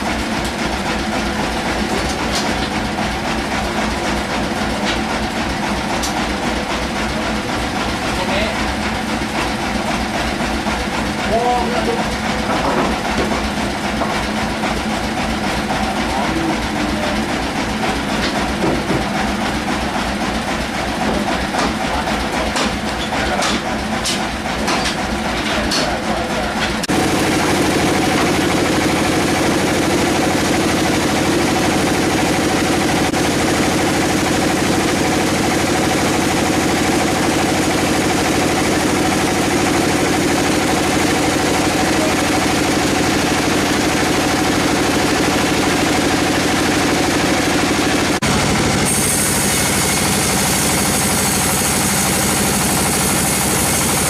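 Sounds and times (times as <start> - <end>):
sawmill engine chugging: 0.0 - 54.0
steady machine hum: 0.0 - 54.0
sharp clicks and knocks: 21.0 - 26.0.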